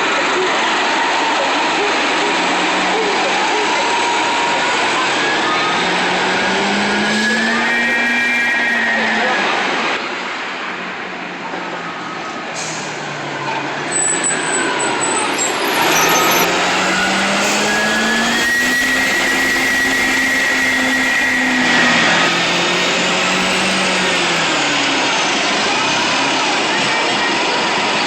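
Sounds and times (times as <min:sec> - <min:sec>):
bus diesel engine pulling away: 0:02.1 - 0:10.0, 0:11.6 - 0:26.9
high turbo whistle: 0:03.9 - 0:10.2, 0:13.8 - 0:26.5.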